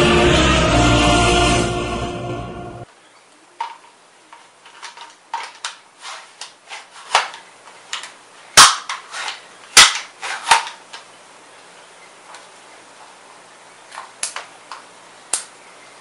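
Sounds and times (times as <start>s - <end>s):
airsoft gun sharp shots: 8.6s - 9.0s, 9.8s - 10.7s.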